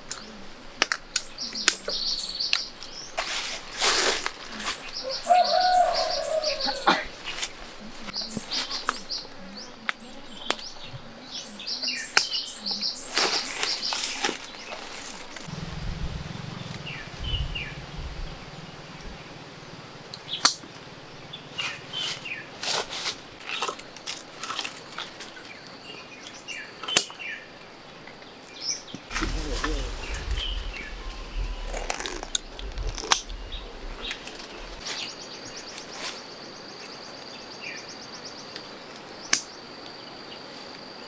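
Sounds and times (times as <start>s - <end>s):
small birds chirping: 0.1s - 23.4s, 28.6s - 38.5s
low rumble: 14.9s - 22.0s, 29.1s - 35.2s.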